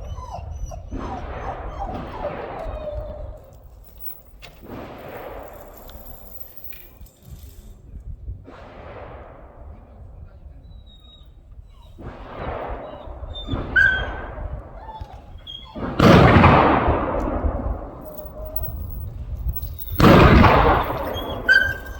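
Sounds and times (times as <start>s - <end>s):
dog whining: 0.0s - 4.3s, 10.7s - 16.4s, 17.2s - 21.9s
gunshots echoing: 4.6s - 6.4s, 15.8s - 19.1s, 19.7s - 21.9s.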